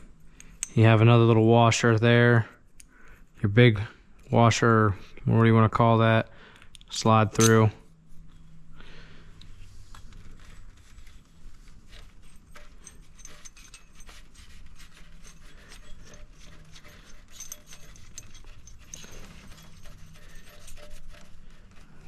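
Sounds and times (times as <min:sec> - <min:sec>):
low steady hum: 0:00.0 - 0:22.0
metal parts clicking and clinking: 0:00.4 - 0:01.0, 0:07.3 - 0:07.7, 0:10.0 - 0:22.0.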